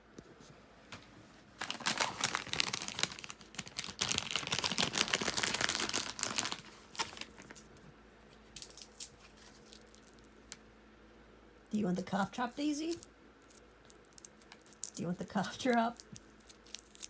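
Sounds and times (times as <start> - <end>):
plastic bag crinkling: 1.5 - 7.7, 8.6 - 10.4, 12.8 - 17.0.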